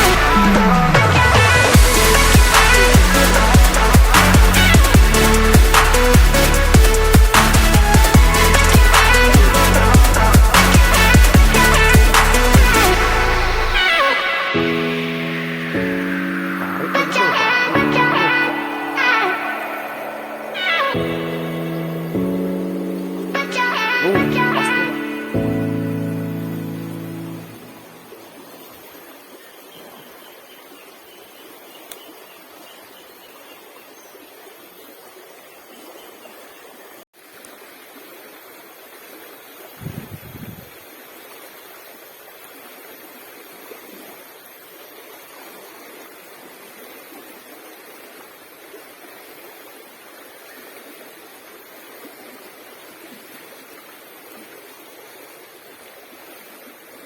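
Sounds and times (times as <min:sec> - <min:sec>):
flowing water rushing: 0:00.0 - 0:57.0.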